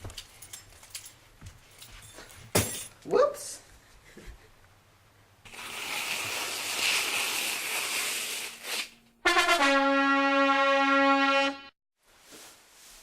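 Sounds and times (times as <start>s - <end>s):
trombone-like brass note: 9.2s - 11.7s.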